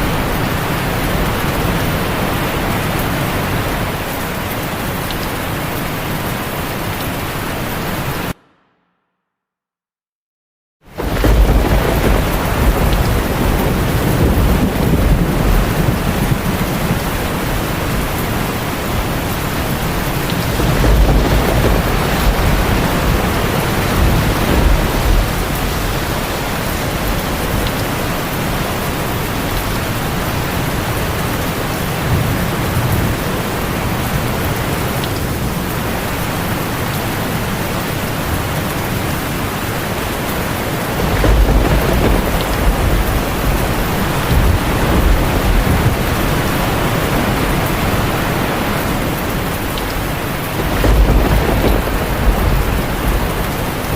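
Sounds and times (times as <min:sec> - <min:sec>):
heavy rain: 0:00.0 - 0:08.5, 0:10.8 - 0:53.9
low rolling thunder: 0:10.9 - 0:37.7, 0:39.4 - 0:53.9.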